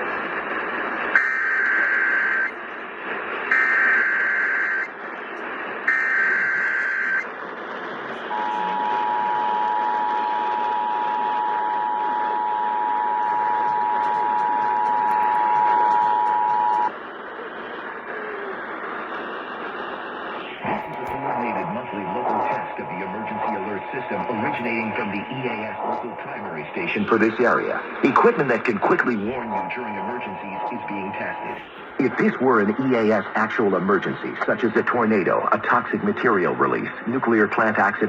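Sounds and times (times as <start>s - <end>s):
radio reception hiss: 0.0s - 38.0s
two-tone attention signal: 8.3s - 16.9s
digital header bursts: 20.5s - 33.7s.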